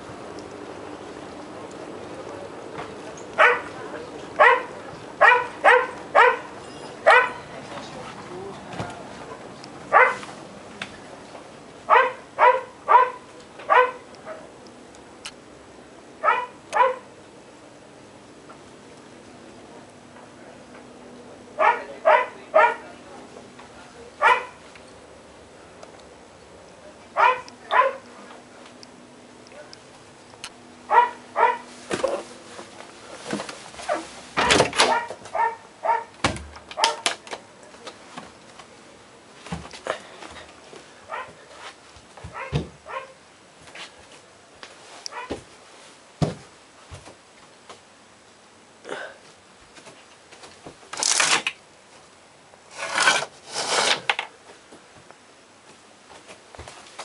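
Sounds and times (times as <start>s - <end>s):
dog barking: 3.4s - 3.8s, 4.4s - 7.5s, 9.9s - 10.3s, 11.9s - 14.5s, 16.2s - 17.1s, 21.6s - 22.8s, 24.2s - 24.6s, 27.2s - 28.0s, 30.9s - 31.7s, 33.9s - 36.2s, 36.8s - 37.0s, 41.1s - 41.4s, 42.3s - 43.2s, 45.1s - 45.4s.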